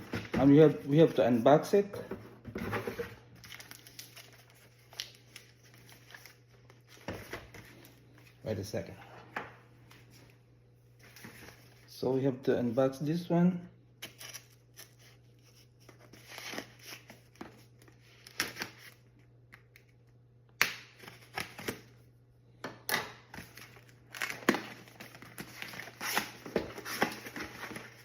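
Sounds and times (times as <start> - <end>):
packaging rustling and crinkling: 2.8 - 8.2, 23.3 - 28.0.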